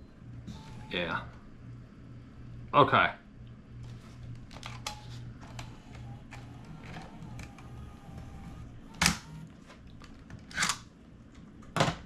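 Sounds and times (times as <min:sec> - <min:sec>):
steady low electrical hum: 0:00.0 - 0:12.0.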